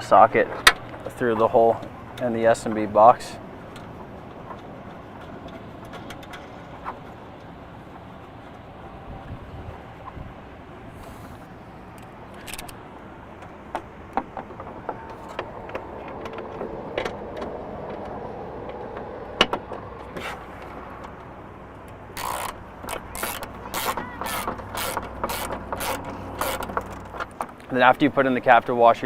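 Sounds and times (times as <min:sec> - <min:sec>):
light clicks and knocks from handling parts: 0:00.4 - 0:08.6, 0:11.9 - 0:12.8, 0:13.4 - 0:28.5
ratchet wrench clicking: 0:22.2 - 0:27.0.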